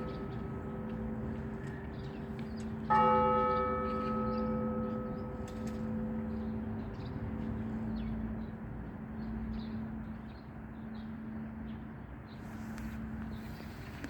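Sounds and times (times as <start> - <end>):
church bell hum: 0.0 - 8.5.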